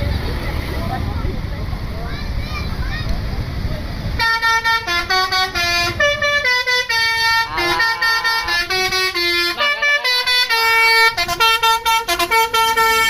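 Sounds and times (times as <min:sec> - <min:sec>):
bus musical air horn melody: 0:04.2 - 0:13.0.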